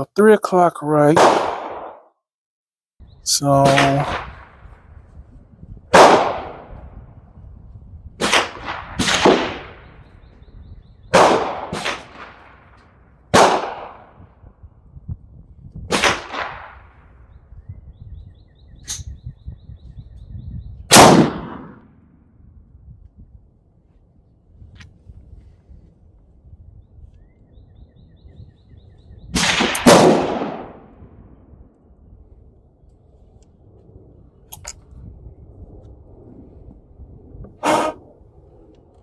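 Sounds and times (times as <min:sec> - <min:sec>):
gunshots: 0:01.1 - 0:02.1, 0:03.4 - 0:04.6, 0:05.9 - 0:06.7, 0:08.2 - 0:10.0, 0:11.1 - 0:14.2, 0:15.9 - 0:17.0, 0:20.9 - 0:21.9, 0:29.4 - 0:31.0, 0:37.6 - 0:38.0
faint gunshot crack: 0:06.0 - 0:06.7.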